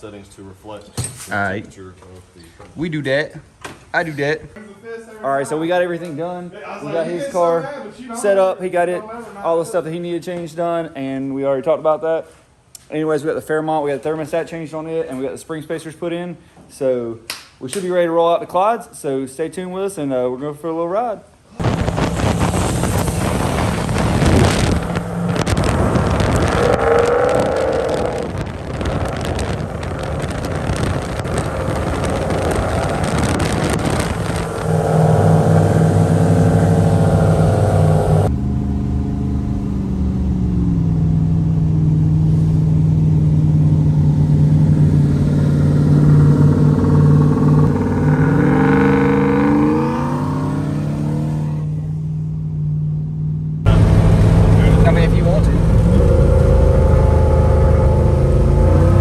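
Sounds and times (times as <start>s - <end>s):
race car engine accelerating: 21.6s - 59.0s.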